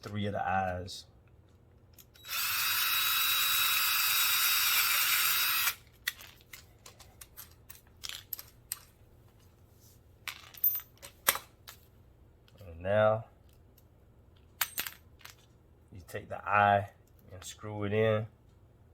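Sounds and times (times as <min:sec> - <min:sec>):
power drill boring into plastic pipe: 0:02.2 - 0:05.8.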